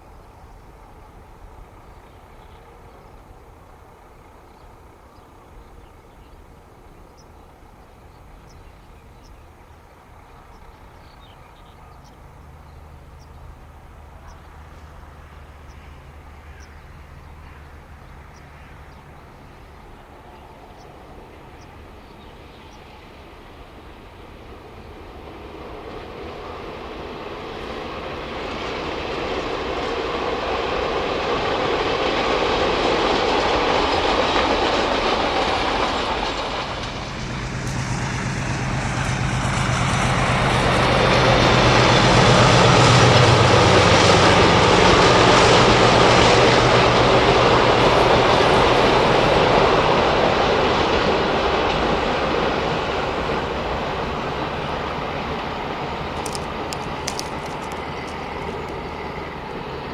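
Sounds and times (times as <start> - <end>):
freight train rumble: 0.0 - 59.9.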